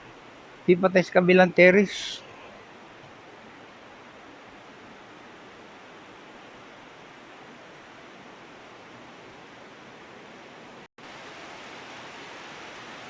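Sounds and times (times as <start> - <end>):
heavy rain falling: 11.0 - 13.0.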